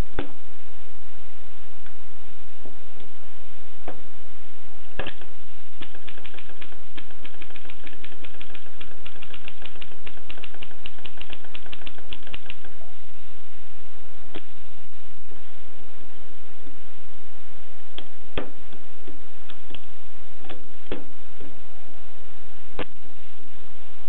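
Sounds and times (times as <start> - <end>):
manual typewriter typing: 5.8 - 12.7.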